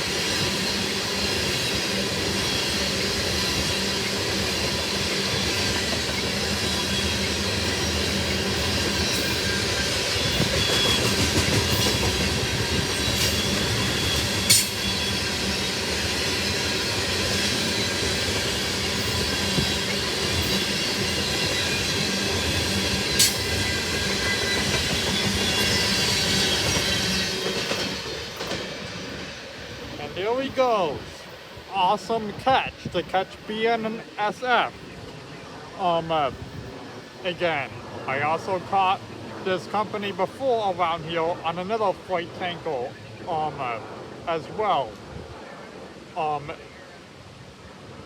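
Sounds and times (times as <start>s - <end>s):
clickety-clack over rail joints: 0.0s - 30.0s
freight train rolling past: 0.0s - 48.0s.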